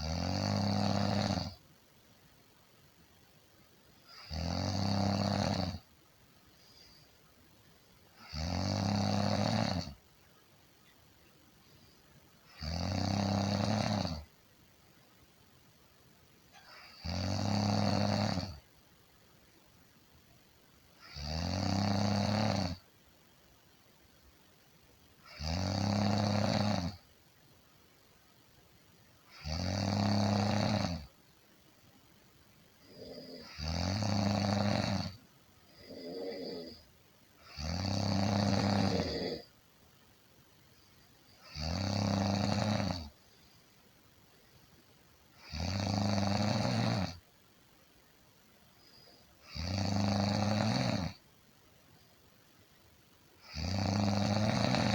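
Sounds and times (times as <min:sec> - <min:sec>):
person snoring: 0:00.0 - 0:01.6, 0:04.1 - 0:05.9, 0:08.2 - 0:10.0, 0:12.5 - 0:14.3, 0:16.6 - 0:18.6, 0:21.0 - 0:22.8, 0:25.2 - 0:27.0, 0:29.3 - 0:31.1, 0:32.8 - 0:39.5, 0:41.4 - 0:43.2, 0:45.4 - 0:47.2, 0:49.4 - 0:51.2, 0:53.4 - 0:54.9.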